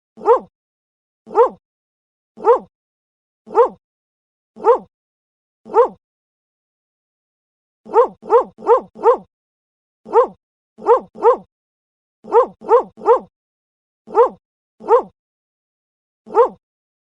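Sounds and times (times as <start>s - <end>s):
dog barking: 0.2s - 0.5s, 1.3s - 1.6s, 2.4s - 2.7s, 3.5s - 3.8s, 4.6s - 4.9s, 5.7s - 6.0s, 7.9s - 9.3s, 10.1s - 11.5s, 12.2s - 13.3s, 14.1s - 15.2s, 16.3s - 16.6s.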